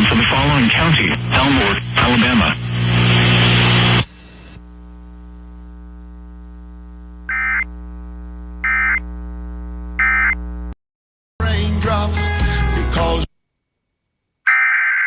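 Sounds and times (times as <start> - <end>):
radio static: 0.0 - 10.8
steady electrical hum: 0.1 - 10.8
data tone bursts: 10.0 - 10.4.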